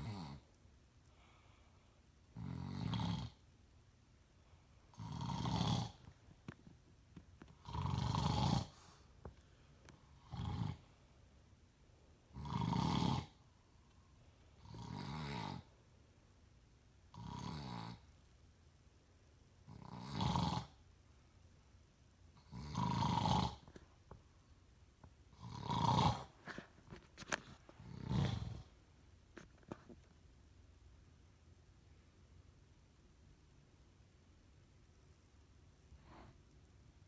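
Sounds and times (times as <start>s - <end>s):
man snoring: 0.0s - 0.4s, 2.4s - 3.4s, 4.9s - 6.0s, 7.6s - 8.8s, 10.2s - 10.8s, 12.3s - 13.4s, 14.6s - 15.7s, 17.1s - 18.0s, 19.7s - 20.8s, 22.4s - 23.7s, 25.4s - 26.3s, 27.8s - 28.7s.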